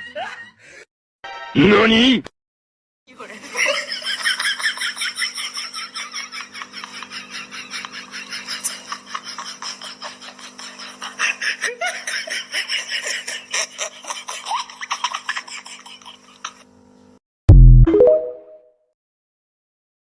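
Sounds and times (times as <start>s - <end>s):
wheezy breathy laughter: 3.4s - 16.7s.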